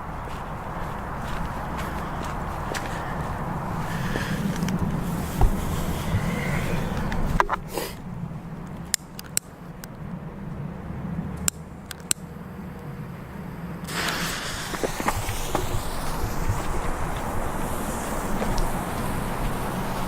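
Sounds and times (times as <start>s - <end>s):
sharp clicks and crackles: 8.6s - 10.0s, 11.4s - 12.9s
firework hissing sparks: 13.9s - 20.0s.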